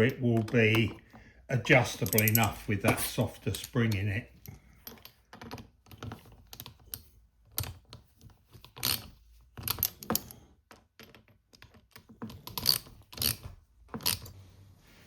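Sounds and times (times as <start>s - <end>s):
small metal parts clicking: 1.9s - 14.4s.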